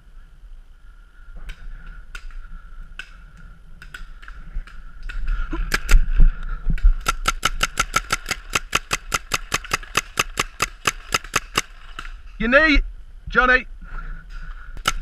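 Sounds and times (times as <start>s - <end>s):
paintball marker firing: 7.0s - 11.7s, 14.8s - 15.0s.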